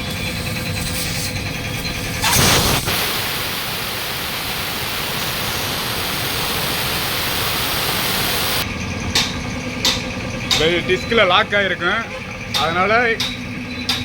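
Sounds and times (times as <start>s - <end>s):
pressurised air hissing: 0.9s - 8.6s.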